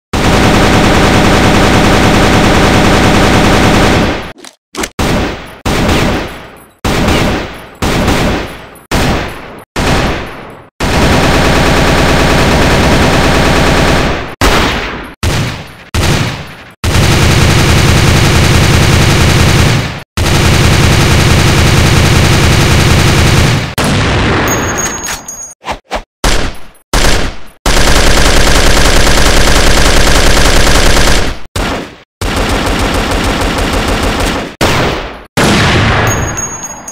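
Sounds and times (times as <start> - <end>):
automatic gunfire bursts: 0.2 - 4.2, 10.8 - 14.6, 16.8 - 23.7, 27.0 - 35.6
single gunshots ringing out: 34.2 - 36.3.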